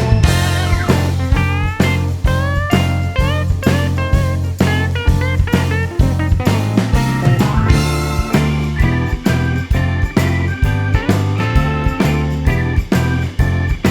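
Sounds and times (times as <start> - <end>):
guitar instrumental with drum beat: 0.0 - 13.9.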